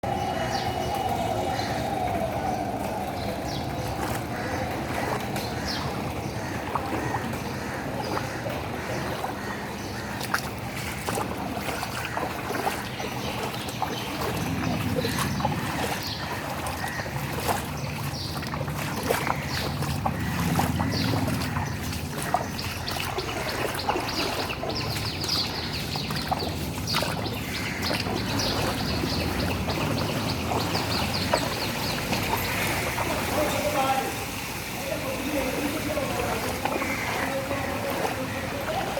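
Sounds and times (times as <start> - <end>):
traffic engines rumbling: 0.0 - 38.9
water sloshing and splashing: 0.0 - 38.9
short splashy ticks: 10.2 - 33.6.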